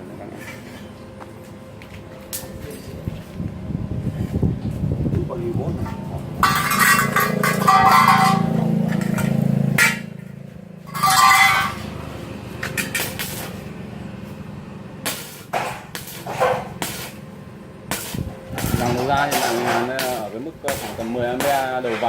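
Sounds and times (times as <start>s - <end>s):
low steady hum: 0.0s - 13.0s
welding arc crackling: 12.4s - 21.9s.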